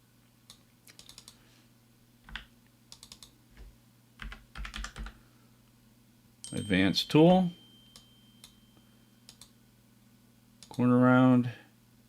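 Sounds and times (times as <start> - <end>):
typing on computer keyboard: 0.9 - 1.4, 2.3 - 5.2.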